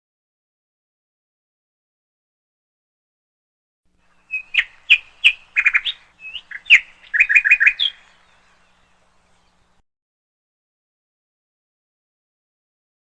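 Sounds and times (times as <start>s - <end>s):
bird singing: 4.0s - 9.8s.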